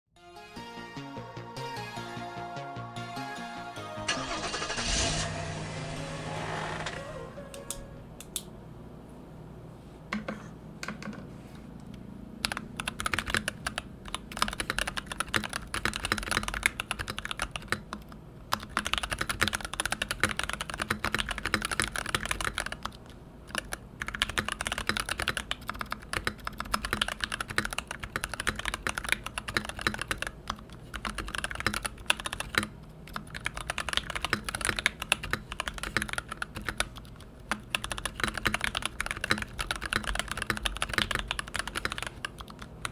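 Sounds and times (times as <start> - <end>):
mechanical keyboard typing: 12.4 - 42.9.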